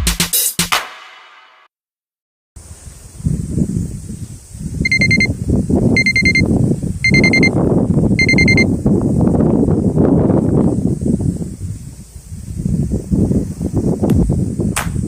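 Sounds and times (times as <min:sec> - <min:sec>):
electronic alarm beeping: 0:04.8 - 0:05.3, 0:06.0 - 0:07.6, 0:08.2 - 0:08.7.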